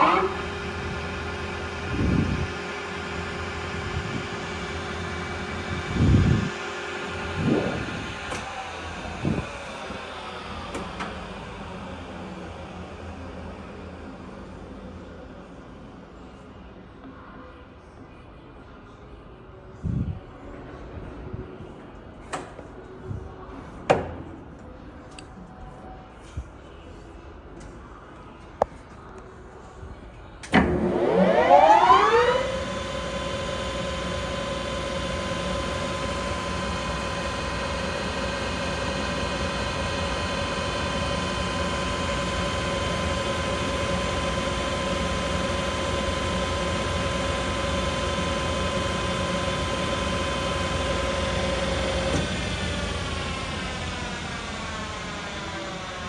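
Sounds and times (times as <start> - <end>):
lathe spindle gear whine: 0.0 - 13.5, 30.5 - 56.0.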